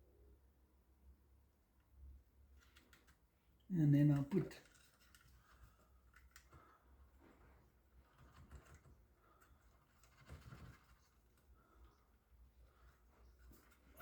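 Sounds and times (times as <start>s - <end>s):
faint small clicks and taps: 2.5s - 3.3s, 4.6s - 12.0s.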